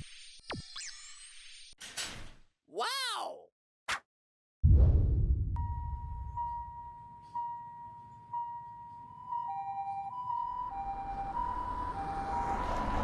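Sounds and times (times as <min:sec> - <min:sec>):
railroad crossing bell ringing: 0:05.6 - 0:13.0.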